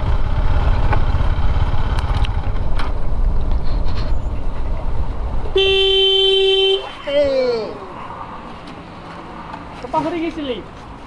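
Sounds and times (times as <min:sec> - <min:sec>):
motorcycle rumble: 0:00.0 - 0:09.8
vehicle horn steady note: 0:05.5 - 0:07.0.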